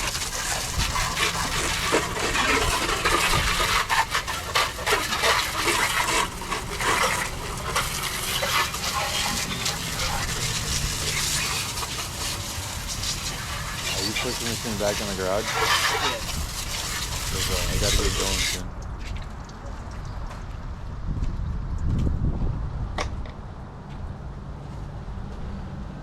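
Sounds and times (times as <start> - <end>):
hose water spraying on metal: 0.0 - 19.1.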